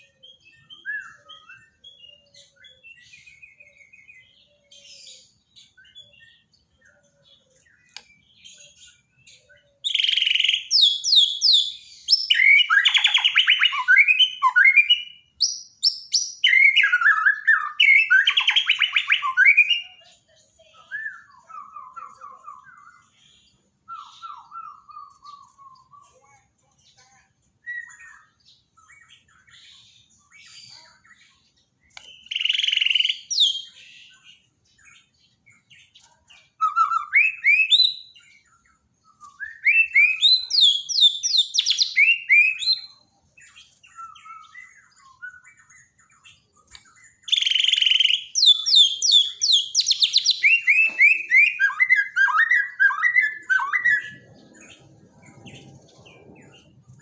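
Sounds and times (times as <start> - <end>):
songbird whistling varied phrases: 9.9 - 20.0, 32.1 - 34.1, 36.6 - 38.2, 39.3 - 42.9, 47.2 - 54.1.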